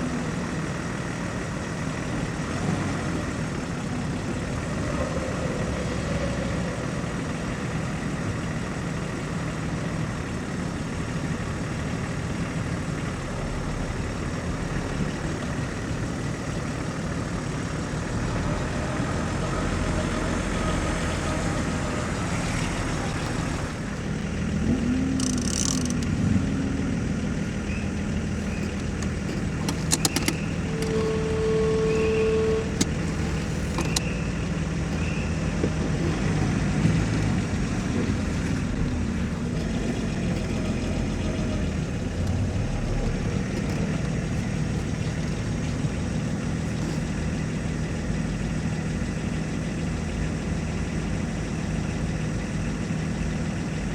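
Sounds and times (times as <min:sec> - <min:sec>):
vehicle engine running: 0:00.0 - 0:53.9
sharp clicks: 0:25.2 - 0:26.2, 0:28.6 - 0:31.0.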